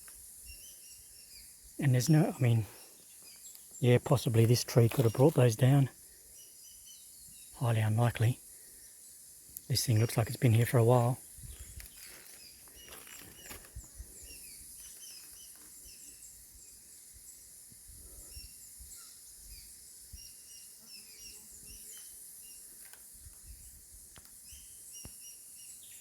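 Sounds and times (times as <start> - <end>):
insect drone: 0.0 - 26.0
birds chirping: 0.4 - 17.4.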